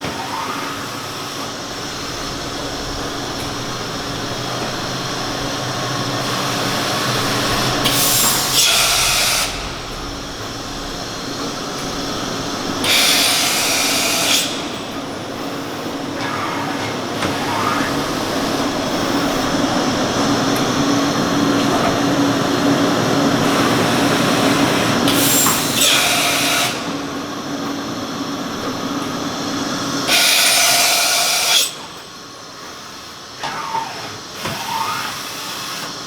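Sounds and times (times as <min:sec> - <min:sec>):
machining center hum and whine: 0:00.0 - 0:36.0
loud hissing bursts: 0:00.8 - 0:16.2.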